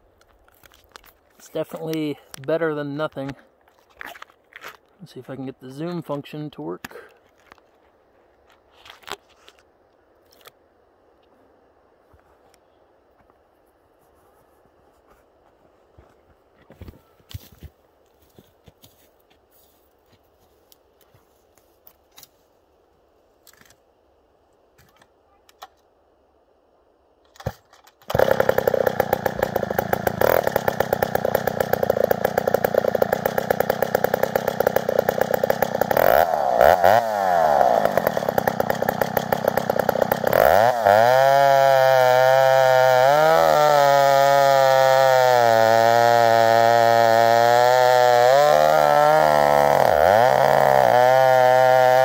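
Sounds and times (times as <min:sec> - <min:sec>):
chainsaw revving: 0:28.1 - 0:52.0.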